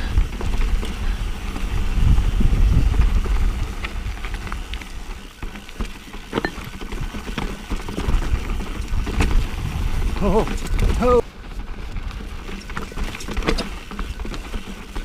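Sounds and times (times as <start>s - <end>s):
wind buffeting microphone: 0.0s - 4.7s, 8.1s - 11.2s
bike rattling: 0.0s - 15.0s
bike tyres rumbling over dirt: 0.0s - 15.0s
clicks and knocks from rocks: 3.0s - 15.0s.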